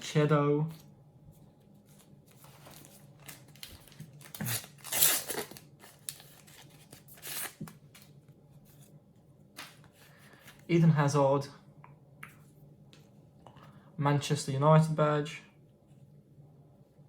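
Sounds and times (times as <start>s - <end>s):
wrapper crinkling: 2.4s - 8.1s
packet tearing: 2.6s - 8.1s.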